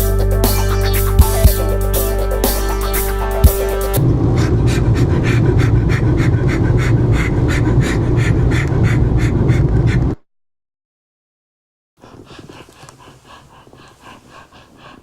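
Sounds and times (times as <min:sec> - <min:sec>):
music: 0:00.0 - 0:04.0
rapid heavy panting: 0:00.0 - 0:10.2, 0:12.0 - 0:15.0
low steady hum: 0:04.0 - 0:08.7.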